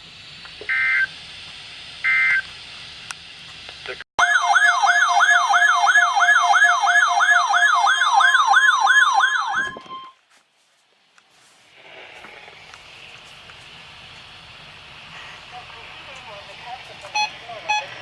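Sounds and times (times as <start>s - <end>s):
electronic siren alarm yelping: 4.2s - 10.2s.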